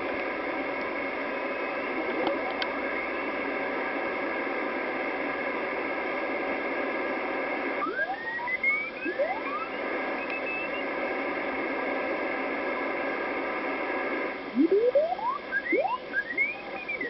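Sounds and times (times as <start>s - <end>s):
faint steady tones: 0.0s - 17.0s
radio hiss and static: 0.0s - 17.0s
whistling tones sliding up: 7.8s - 10.8s, 14.6s - 17.0s.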